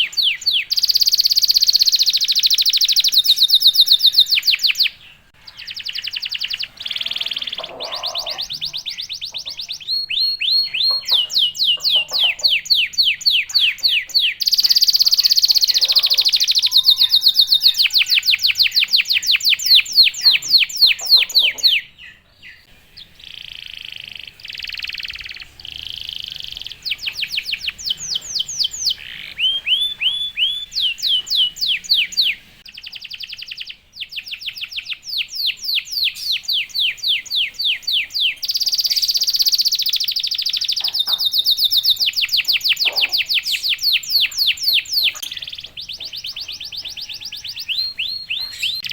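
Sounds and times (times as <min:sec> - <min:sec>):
canary singing trills: 0:00.0 - 0:48.9.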